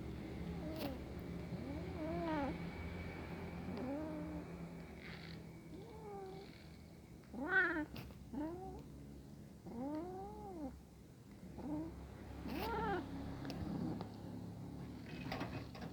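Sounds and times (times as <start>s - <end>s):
cat meowing: 7.3s - 8.8s.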